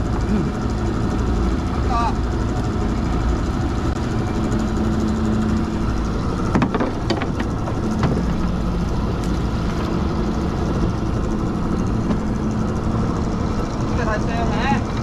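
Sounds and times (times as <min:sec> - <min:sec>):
boat motor humming: 0:00.0 - 0:15.0
knocks and rattles: 0:06.4 - 0:09.8.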